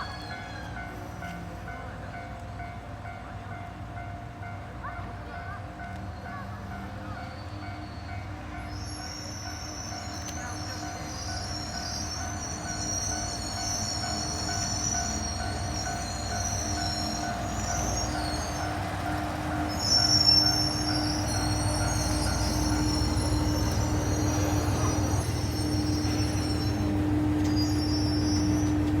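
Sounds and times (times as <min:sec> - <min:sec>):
railcar engine hum: 0:00.0 - 0:29.0
high wavering squeal: 0:07.3 - 0:29.0.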